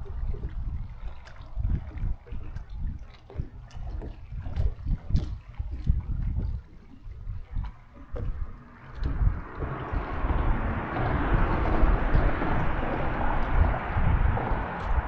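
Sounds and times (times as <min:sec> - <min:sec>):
wind buffeting microphone: 0:00.0 - 0:15.0
steady rushing noise: 0:08.0 - 0:15.0.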